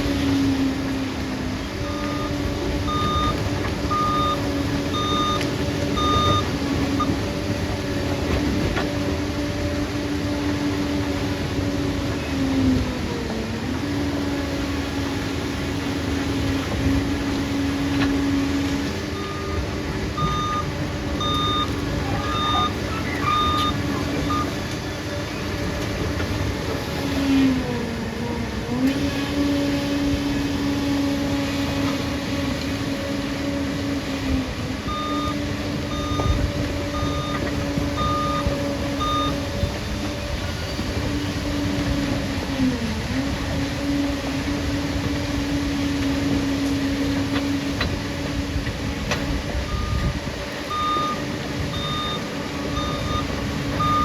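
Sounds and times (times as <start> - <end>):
bulldozer diesel engine running: 0.0 - 54.0
reversing alarm beeps: 1.8 - 7.3, 19.1 - 24.6, 34.8 - 39.7, 49.7 - 54.0.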